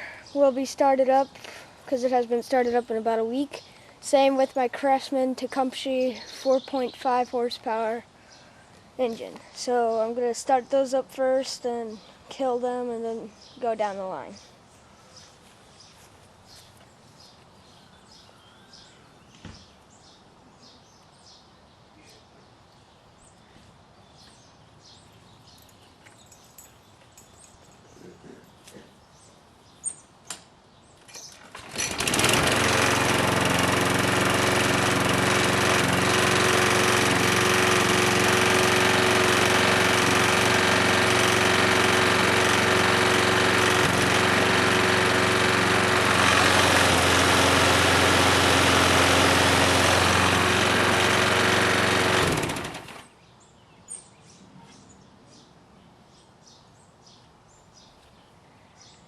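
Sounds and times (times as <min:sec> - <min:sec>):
lawn mower engine running: 0:31.2 - 0:53.1.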